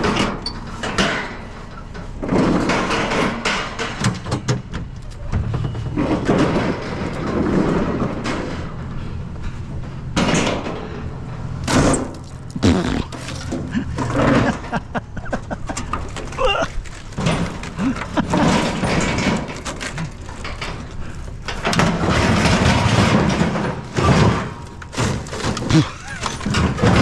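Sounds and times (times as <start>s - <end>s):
objects knocking and rattling: 0.0s - 9.1s, 9.8s - 27.0s
scraping and rustling: 11.7s - 27.0s.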